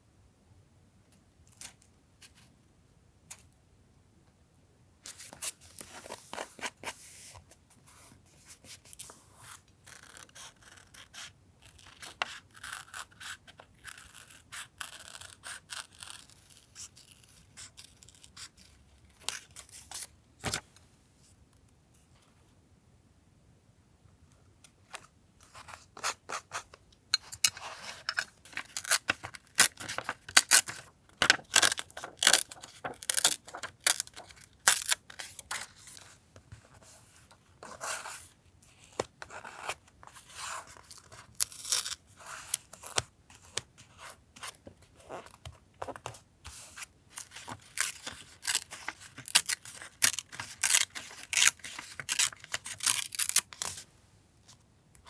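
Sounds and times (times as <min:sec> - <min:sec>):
paper snipping and ripping: 0:27.4 - 0:35.7, 0:47.2 - 0:53.8.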